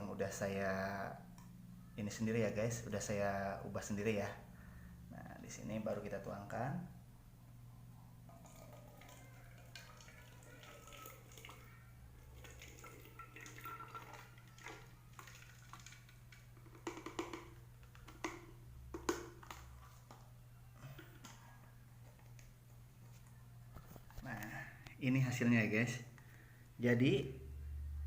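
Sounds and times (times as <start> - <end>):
liquid trickling into bottle: 8.3 - 17.6
low steady hum: 11.8 - 28.0
glass and bottle knocks: 16.8 - 17.6.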